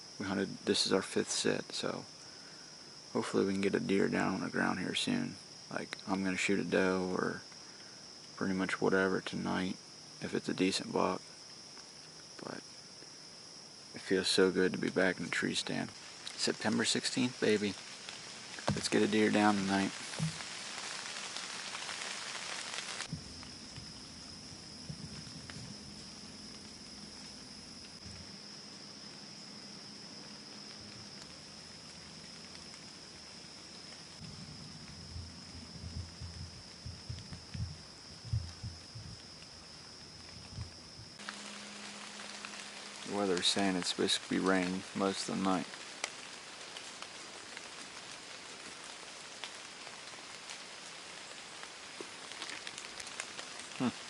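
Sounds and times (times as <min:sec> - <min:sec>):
crickets chirping: 0:00.0 - 0:54.0
light rain on leaves: 0:00.0 - 0:54.0
low thumps and rumble: 0:20.2 - 0:20.4, 0:23.1 - 0:26.6, 0:28.0 - 0:28.3, 0:34.2 - 0:41.2.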